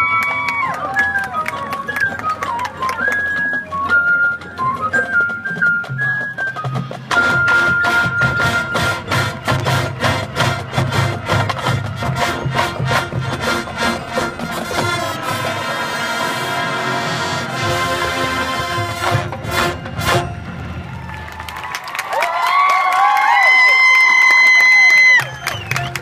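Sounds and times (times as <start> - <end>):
marching band playing: 0.0 - 22.2
drumline percussion strikes: 1.5 - 22.3.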